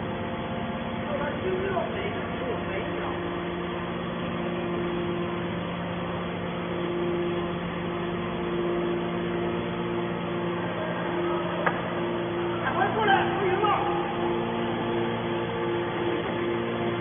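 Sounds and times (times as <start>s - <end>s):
baler motor and pump hum: 0.0s - 17.0s
higher tone cutting in: 8.4s - 17.0s.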